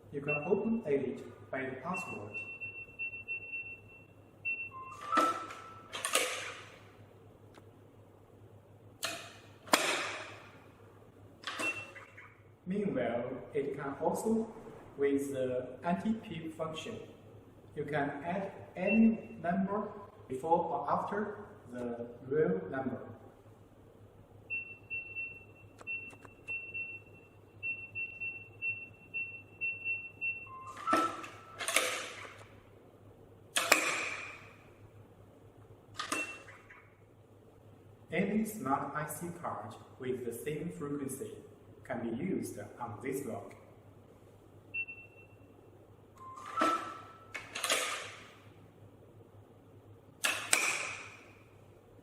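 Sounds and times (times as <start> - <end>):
keypad beeps: 0.2 - 0.9, 1.9 - 6.2, 11.5 - 12.3, 24.5 - 31.9, 36.0 - 36.8, 44.8 - 45.5, 46.2 - 47.5
electronic lock chime: 0.2 - 1.0, 1.9 - 6.2, 11.6 - 12.3, 36.1 - 36.7, 46.2 - 47.4
door lock mechanical rattles: 5.1 - 6.8, 46.4 - 48.3
lock sharp click: 9.0 - 10.4, 33.6 - 34.5, 46.3 - 48.4, 50.2 - 51.3.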